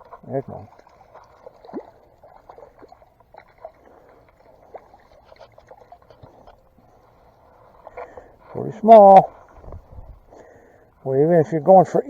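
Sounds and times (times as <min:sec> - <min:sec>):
light water splashes: 0:00.0 - 0:12.0.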